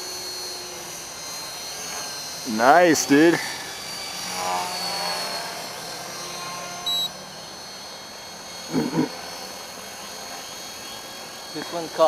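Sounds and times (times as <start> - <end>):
rc helicopter motor whine: 0.0 - 12.0
high beep: 6.9 - 7.2.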